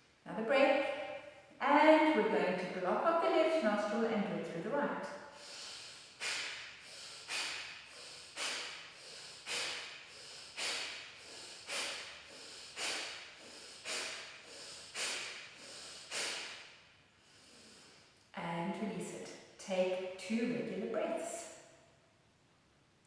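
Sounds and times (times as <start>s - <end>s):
forceful nasal exhalations: 5.3s - 18.2s
soft in-breath: 5.3s - 18.2s.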